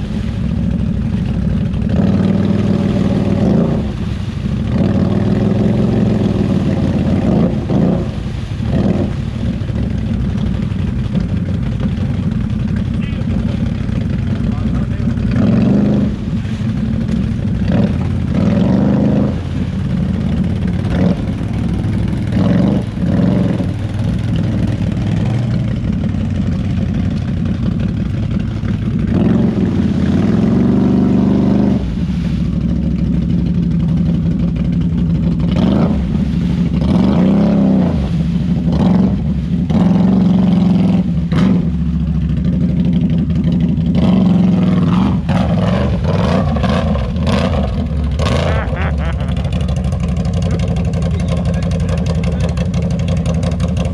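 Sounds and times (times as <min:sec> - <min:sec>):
atv engine revving: 0:00.0 - 0:53.9.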